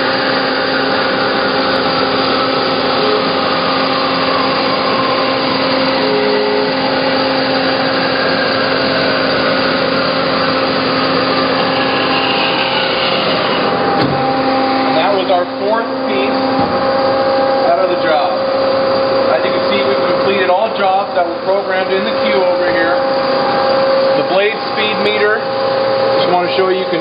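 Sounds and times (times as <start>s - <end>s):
saw blade cutting: 0.0s - 16.4s
bandsaw machine hum: 0.0s - 27.0s.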